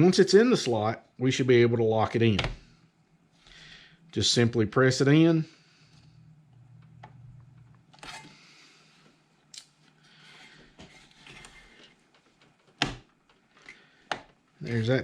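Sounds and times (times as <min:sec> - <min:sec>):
faint handling and scraping: 0:05.7 - 0:15.0.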